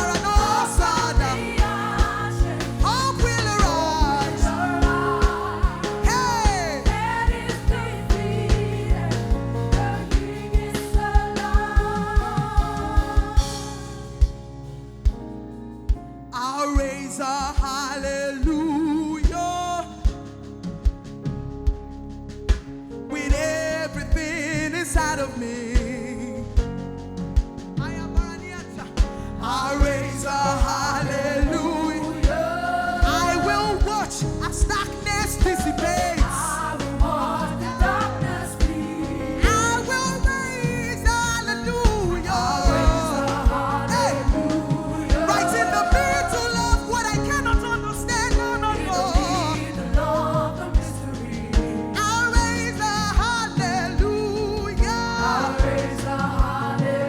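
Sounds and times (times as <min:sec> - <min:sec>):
singers: 0:00.0 - 0:14.6, 0:27.8 - 0:57.0
band playing: 0:00.0 - 0:15.2, 0:29.8 - 0:57.0.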